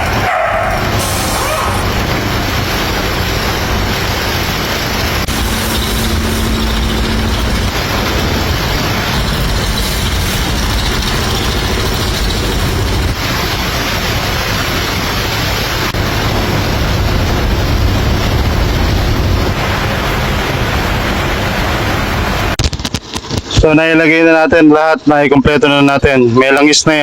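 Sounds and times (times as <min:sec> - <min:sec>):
loud machinery noise: 0:00.0 - 0:23.5.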